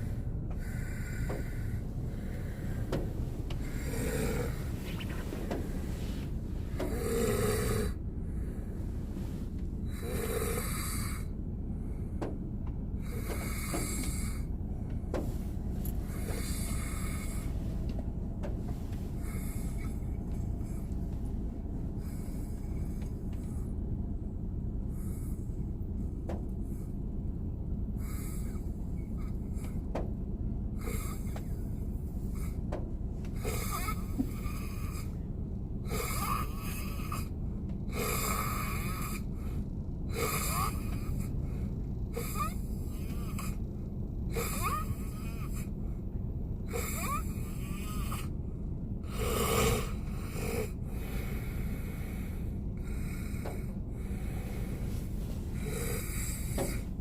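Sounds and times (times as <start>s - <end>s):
steady low rumble: 0.0s - 57.0s
man snoring: 0.6s - 4.9s, 6.8s - 8.0s, 9.9s - 11.3s, 16.1s - 17.6s, 33.4s - 35.2s, 35.8s - 37.3s, 37.9s - 43.6s, 44.2s - 45.7s, 46.7s - 48.3s, 49.0s - 56.9s.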